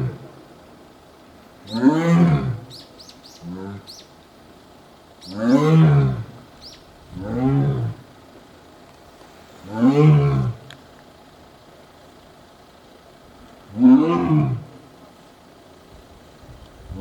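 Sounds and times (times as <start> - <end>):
tiger roaring: 1.6 - 2.7, 5.3 - 6.4, 7.1 - 8.1, 9.6 - 10.7, 13.7 - 14.8.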